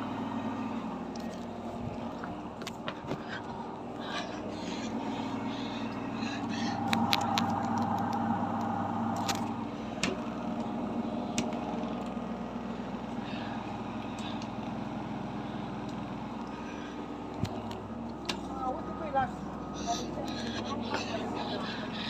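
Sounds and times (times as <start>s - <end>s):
washing machine spinning: 0.0s - 2.6s.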